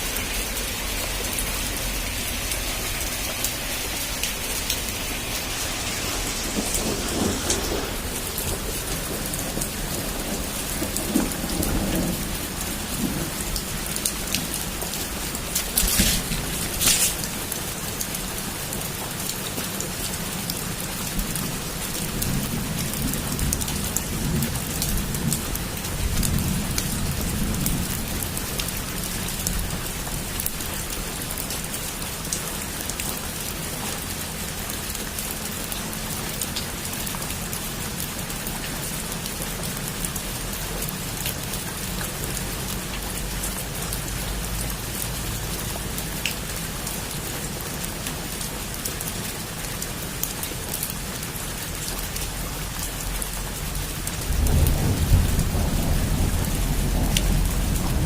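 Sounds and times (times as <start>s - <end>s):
heavy rain falling: 0.0s - 58.0s
low rumble of thunder: 1.6s - 18.2s, 20.7s - 30.8s, 53.7s - 58.0s.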